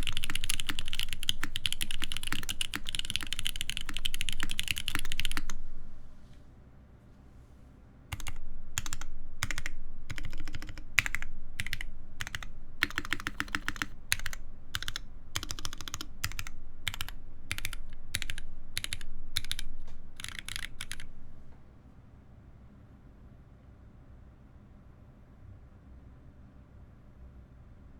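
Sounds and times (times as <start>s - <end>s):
mechanical keyboard typing: 0.0s - 5.9s, 8.1s - 21.4s.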